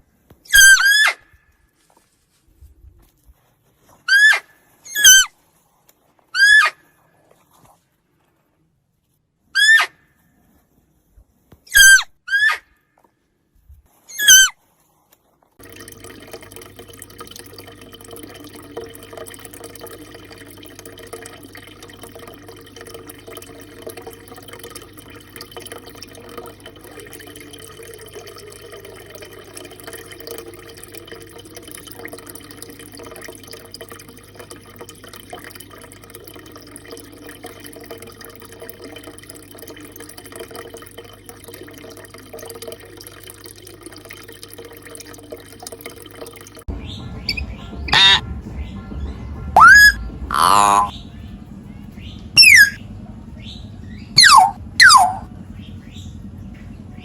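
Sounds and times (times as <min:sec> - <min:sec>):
running water: 0:03.8 - 0:05.4, 0:13.9 - 0:14.6, 0:15.6 - 0:52.8, 0:53.4 - 0:55.3
faint low hum: 0:15.6 - 0:57.0
high-pitched call: 0:47.3 - 0:48.2, 0:49.6 - 0:50.9, 0:52.4 - 0:52.8, 0:54.2 - 0:55.2.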